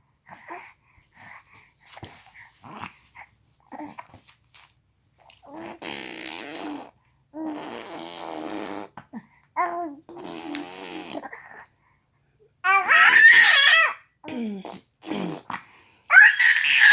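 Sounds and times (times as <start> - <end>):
baby vocalizing: 5.4 - 11.7, 12.6 - 16.9.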